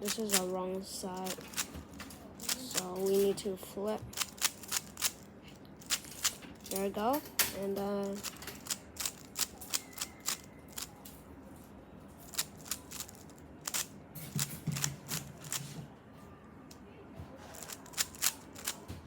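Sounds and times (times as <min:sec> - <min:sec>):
puzzle cube clicking: 0:00.1 - 0:00.5, 0:01.2 - 0:01.7, 0:04.1 - 0:05.2, 0:05.8 - 0:06.4, 0:07.6 - 0:10.9, 0:12.3 - 0:13.9, 0:14.8 - 0:15.6, 0:17.6 - 0:18.8.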